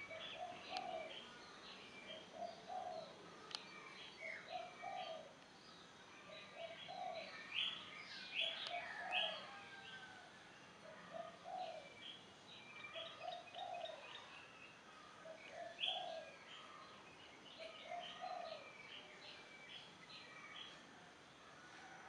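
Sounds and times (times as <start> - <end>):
dove cooing: 0.0 - 1.2, 2.3 - 3.2, 4.3 - 5.4, 6.6 - 7.3, 10.9 - 11.9, 13.0 - 14.3, 15.2 - 16.4, 17.6 - 18.7
small birds chirping: 0.0 - 21.4.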